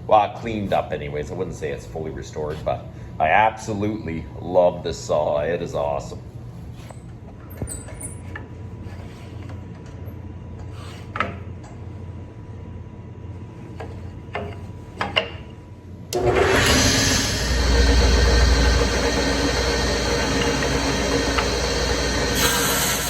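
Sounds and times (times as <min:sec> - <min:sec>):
table saw running: 0:16.2 - 0:23.0.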